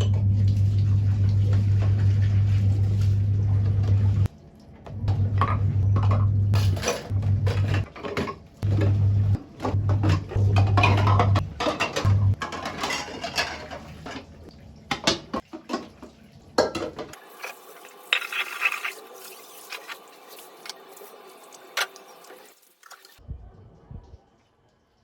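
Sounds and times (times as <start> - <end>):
dishes and cutlery clinking: 9.7 - 14.3.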